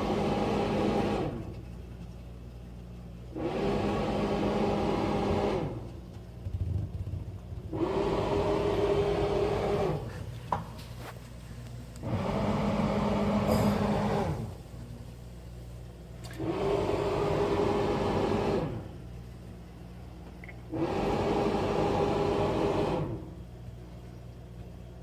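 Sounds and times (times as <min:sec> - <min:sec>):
ice maker buzzing grind: 0:00.0 - 0:01.4, 0:03.3 - 0:05.9, 0:07.7 - 0:10.2, 0:11.9 - 0:14.6, 0:16.3 - 0:18.9, 0:20.7 - 0:23.3
steady low hum: 0:00.0 - 0:25.0.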